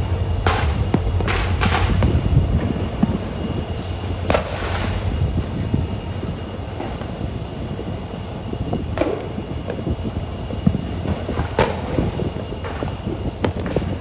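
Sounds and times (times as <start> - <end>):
train wheels clattering: 0.0 - 7.1
train rumbling on track: 0.0 - 14.0.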